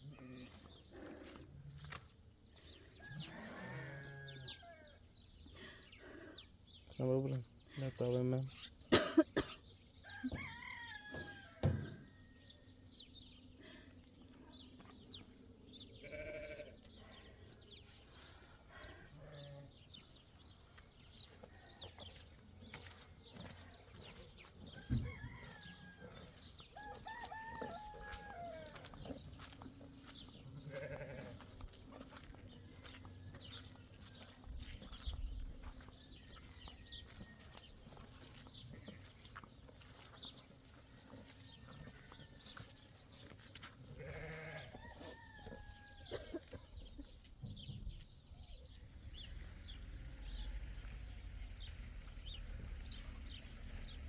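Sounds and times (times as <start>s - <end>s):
goats bleating: 0.0s - 1.4s, 3.2s - 4.4s, 16.0s - 16.9s, 30.5s - 32.8s, 43.9s - 44.9s
rooster crowing: 10.0s - 12.1s, 24.8s - 28.9s, 44.7s - 46.2s.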